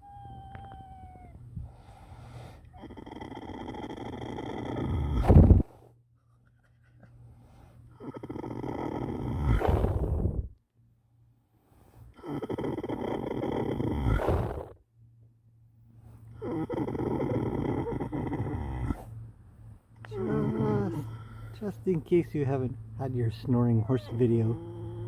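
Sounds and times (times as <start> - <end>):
horse snoring: 2.2 - 5.7, 7.9 - 10.5, 12.1 - 14.8, 16.3 - 19.2, 20.0 - 21.9, 23.2 - 25.0.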